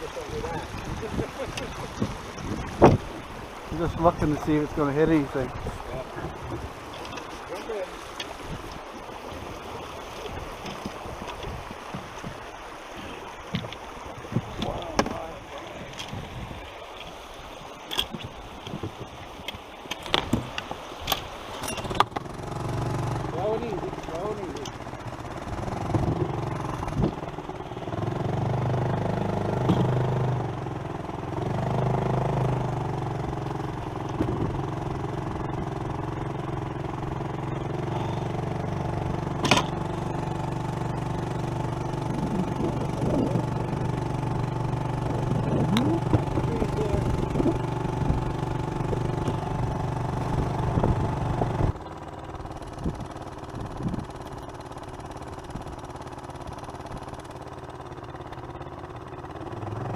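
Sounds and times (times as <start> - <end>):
outboard motor droning: 0.0 - 59.9.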